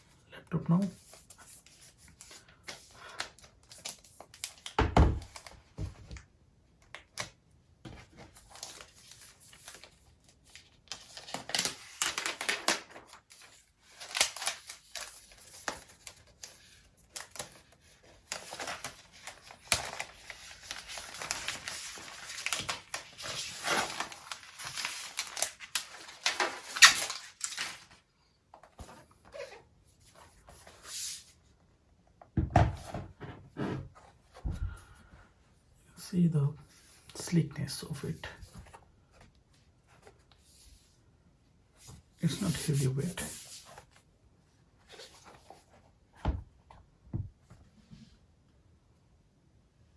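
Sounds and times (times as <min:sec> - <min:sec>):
packaging rustling: 0:07.9 - 0:28.0
packaging crinkling and tearing: 0:08.3 - 0:28.0.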